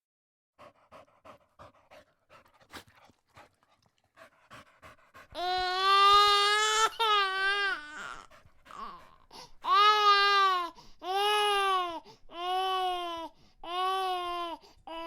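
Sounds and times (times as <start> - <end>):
infant crying: 5.4 - 15.0.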